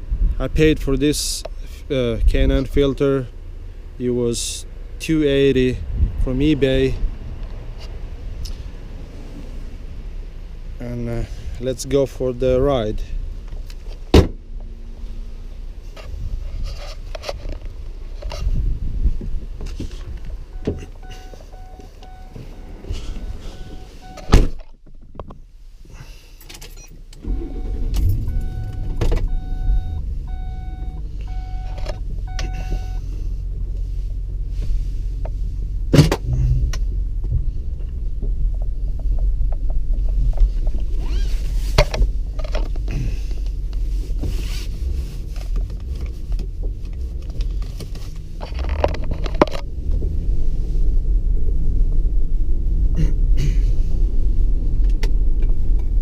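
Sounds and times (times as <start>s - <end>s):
car engine starting and running: 0.0s - 56.0s
loud thump: 14.1s - 14.4s, 24.2s - 24.6s
vehicle warning chime: 20.5s - 24.3s, 26.8s - 33.1s.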